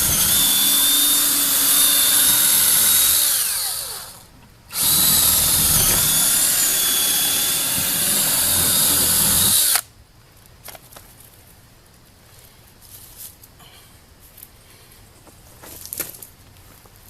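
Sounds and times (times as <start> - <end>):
cordless drill boring into wood: 0.0 - 9.8.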